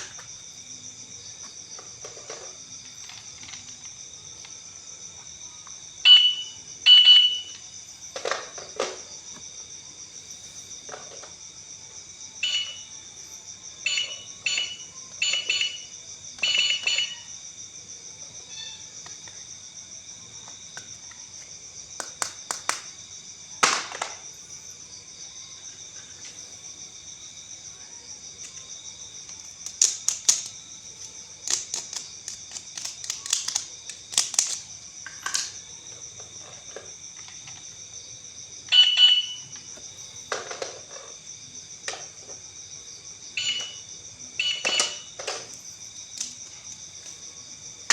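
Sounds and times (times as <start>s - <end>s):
crickets chirring: 0.0s - 47.9s
short electronic beeps: 6.1s - 7.6s, 13.9s - 17.2s, 38.7s - 39.5s, 43.4s - 43.8s, 44.4s - 45.1s
sharp plastic clicks: 29.3s - 35.6s, 44.5s - 46.4s.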